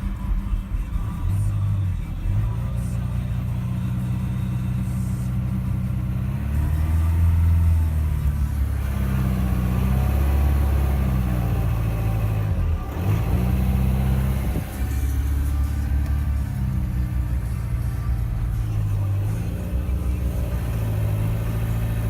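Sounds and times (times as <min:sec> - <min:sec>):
diesel engine idling roughly: 0:00.0 - 0:22.0.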